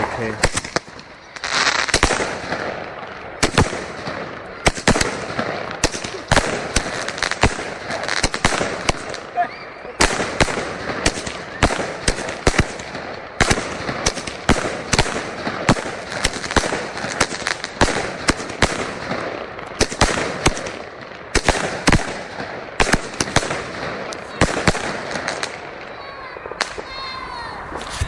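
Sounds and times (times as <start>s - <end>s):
fireworks bangs and crackles: 0.0s - 28.0s.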